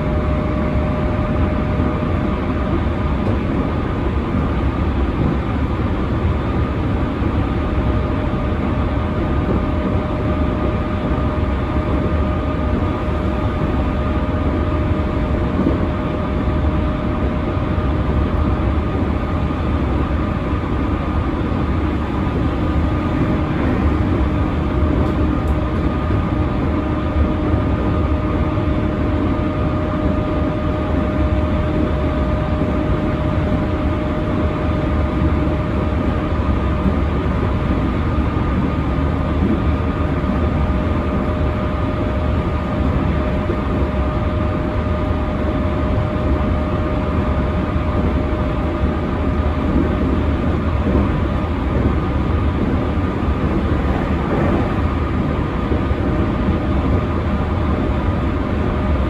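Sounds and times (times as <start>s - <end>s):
train wheels rumbling on rail: 0.0s - 59.0s.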